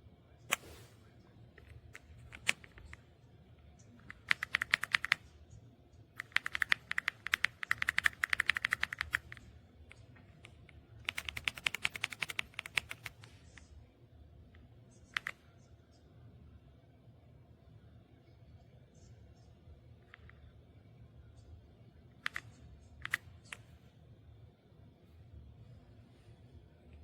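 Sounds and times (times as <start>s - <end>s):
typing on mechanical keyboard: 2.0s - 3.0s, 4.0s - 5.3s, 6.2s - 9.5s, 10.4s - 13.3s, 15.1s - 15.4s, 22.2s - 23.6s.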